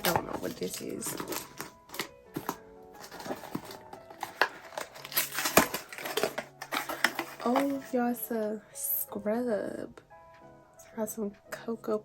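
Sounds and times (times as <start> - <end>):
packaging clicks: 0.0 - 7.9
packaging crinkling: 0.0 - 7.9.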